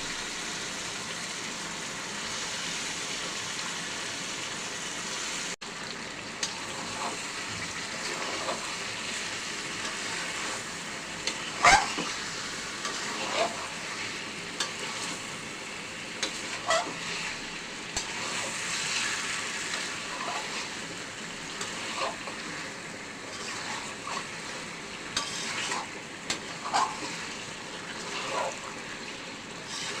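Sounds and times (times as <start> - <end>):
food sizzling in a pan: 0.0 - 30.0
spatula scraping a pan: 6.6 - 7.3, 7.9 - 15.4, 16.2 - 30.0.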